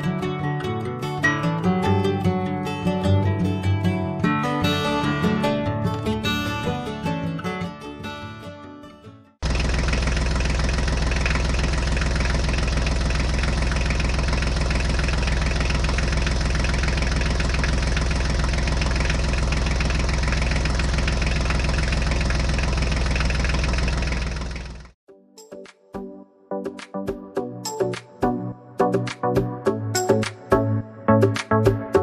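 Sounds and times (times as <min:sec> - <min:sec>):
tractor engine idling: 0:09.4 - 0:25.0.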